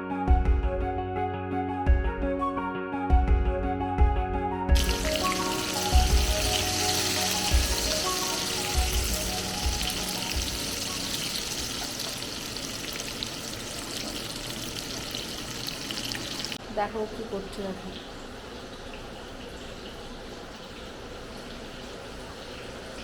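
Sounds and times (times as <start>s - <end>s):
background music: 0.0s - 13.1s
food sizzling in hot oil: 4.8s - 16.6s.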